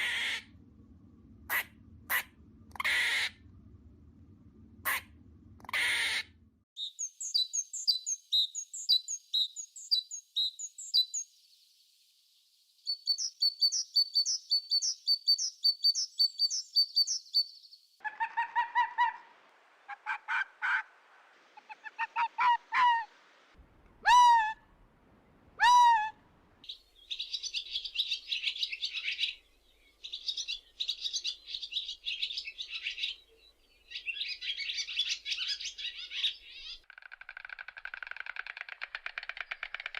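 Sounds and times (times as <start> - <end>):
bird chirping: 6.8 - 19.0, 26.6 - 39.9
raspy bird calls: 33.9 - 39.9.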